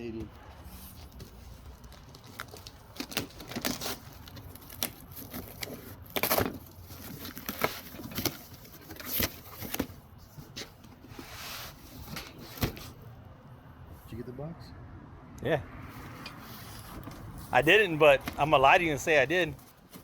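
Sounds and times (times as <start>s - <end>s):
rustling crackling and clicking: 0.6s - 9.9s.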